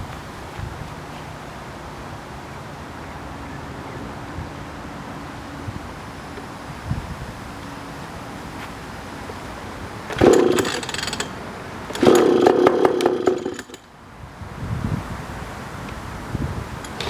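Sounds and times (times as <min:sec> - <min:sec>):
outboard motor cranking: 0:09.0 - 0:13.9, 0:16.7 - 0:17.0.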